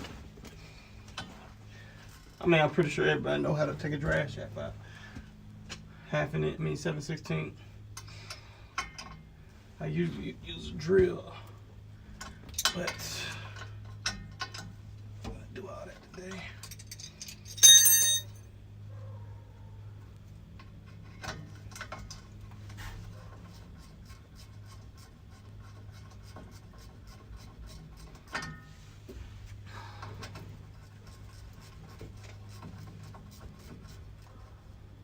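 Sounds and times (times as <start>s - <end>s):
metal clink: 16.6s - 18.4s
low hum: 17.2s - 20.0s.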